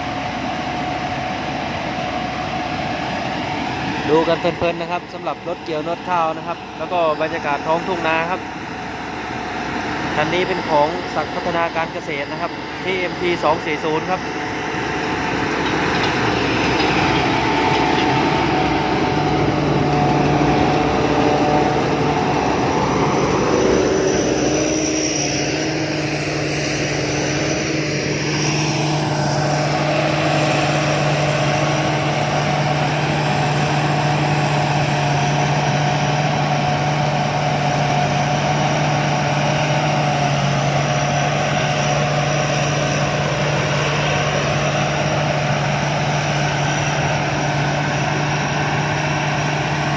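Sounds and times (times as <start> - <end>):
combine harvester engine drone: 0.0 - 49.9.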